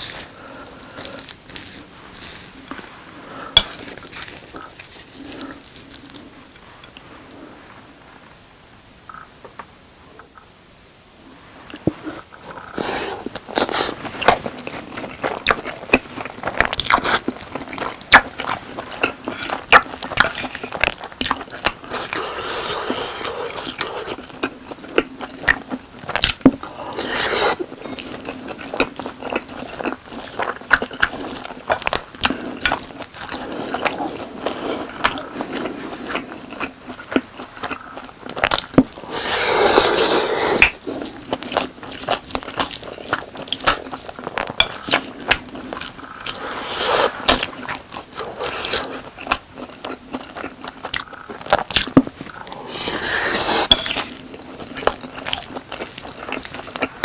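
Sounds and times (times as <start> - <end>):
chewing crunchy fried chicken: 0.0 - 2.9, 3.5 - 6.6, 12.5 - 57.0
spoon scraping: 52.3 - 54.2.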